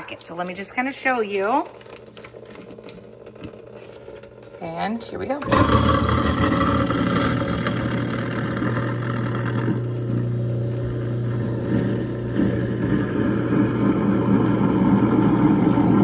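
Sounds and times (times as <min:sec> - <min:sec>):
garbage disposal motor hum: 0:00.0 - 0:16.0
tap water rushing: 0:05.4 - 0:16.0.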